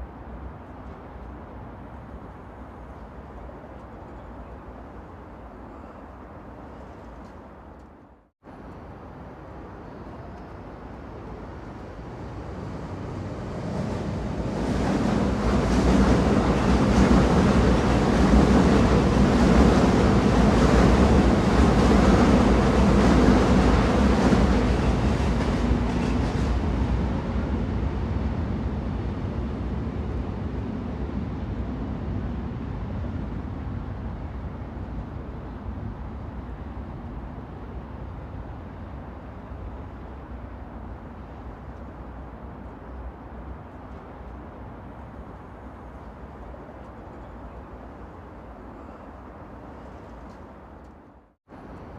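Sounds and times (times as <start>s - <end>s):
train rumbling on rails: 0.0s - 51.9s.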